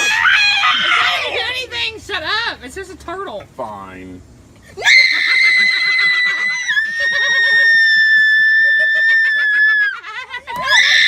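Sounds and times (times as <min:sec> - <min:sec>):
people laughing: 0:04.9 - 0:11.0.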